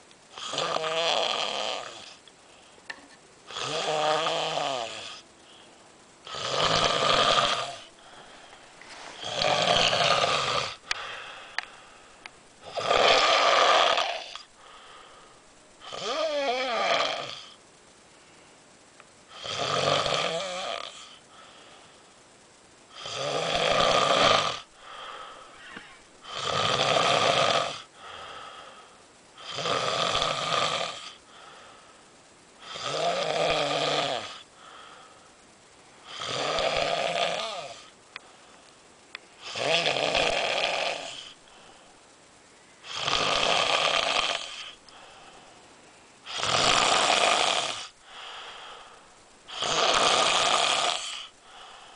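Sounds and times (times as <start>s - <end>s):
loud rhythmic snores: 0.3s - 2.3s, 3.5s - 5.6s, 6.2s - 8.5s, 9.2s - 11.6s, 12.6s - 15.2s, 15.8s - 17.6s, 19.3s - 21.9s, 22.9s - 25.5s, 26.2s - 31.8s, 32.6s - 35.3s, 36.0s - 38.0s, 39.4s - 41.7s, 42.8s - 45.5s, 46.2s - 51.9s
soft breathing: 5.3s - 6.1s, 8.0s - 9.4s, 10.8s - 12.4s, 14.4s - 15.7s, 21.1s - 22.2s, 24.8s - 26.0s, 27.9s - 29.2s, 31.2s - 32.6s, 34.5s - 36.0s, 41.1s - 42.9s, 44.5s - 46.2s, 47.9s - 49.4s, 51.1s - 51.9s.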